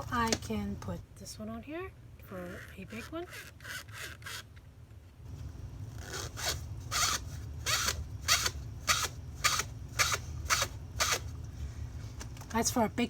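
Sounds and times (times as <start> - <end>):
low steady motor hum: 0.0 - 13.0
foam rubbing and squeaking: 2.3 - 4.5, 5.9 - 11.3.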